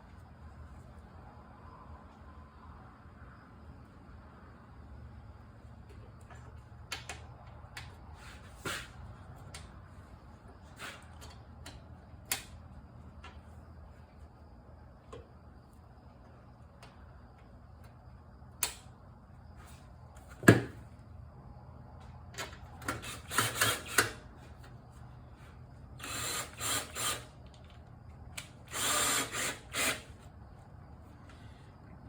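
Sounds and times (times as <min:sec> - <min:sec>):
cordless drill running in bursts: 0:23.0 - 0:24.2, 0:26.0 - 0:27.4, 0:28.5 - 0:30.2.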